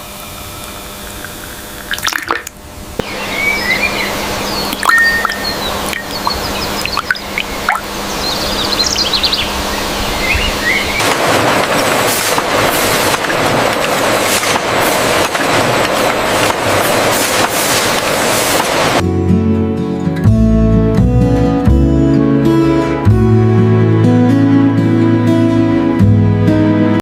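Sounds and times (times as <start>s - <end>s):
steady low hum: 0.0s - 16.8s
birds chirping: 3.0s - 11.4s
rough rushing noise with crackles: 11.0s - 19.0s
plucked acoustic guitar music: 19.0s - 26.6s.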